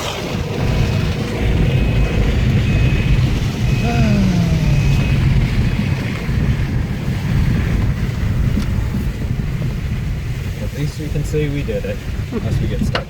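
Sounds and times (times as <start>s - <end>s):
car engine from inside cabin: 1.3s - 7.1s.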